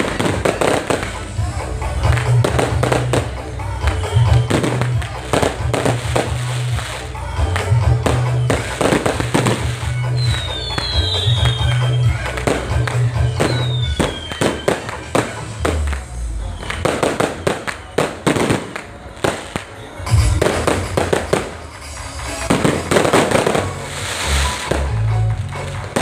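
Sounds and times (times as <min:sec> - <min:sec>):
fireworks bursting and crackling: 0:00.0 - 0:26.0
loud music with heavy bass: 0:00.0 - 0:26.0
falling firework whistle: 0:08.5 - 0:21.6.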